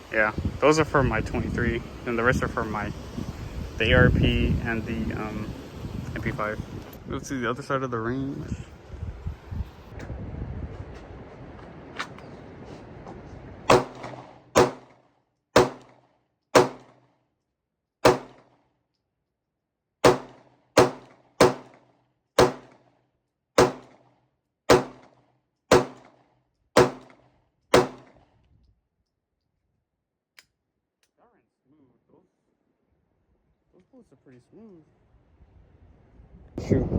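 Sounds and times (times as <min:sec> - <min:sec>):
pistol shots with echo: 0:13.7 - 0:14.9, 0:15.6 - 0:15.9, 0:16.6 - 0:16.9, 0:18.0 - 0:18.4, 0:20.0 - 0:21.8, 0:22.4 - 0:22.8, 0:23.6 - 0:24.0, 0:24.7 - 0:25.1, 0:25.7 - 0:26.1, 0:26.8 - 0:28.1.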